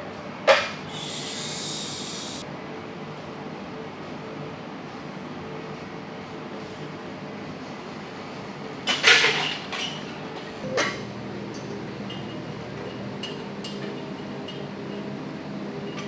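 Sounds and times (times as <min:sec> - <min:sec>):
steady background hum: 0:00.8 - 0:02.4.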